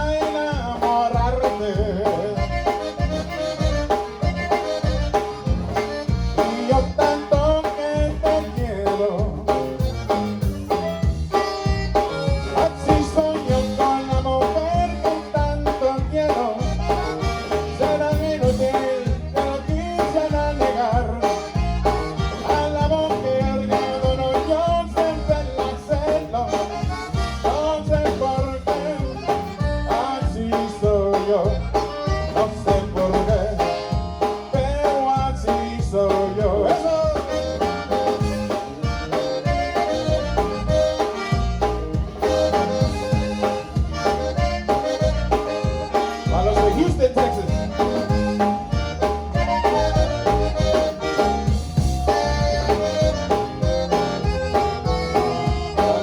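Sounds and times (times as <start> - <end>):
accordion melody: 0.0 - 56.0
bass and drum beat: 0.0 - 56.0.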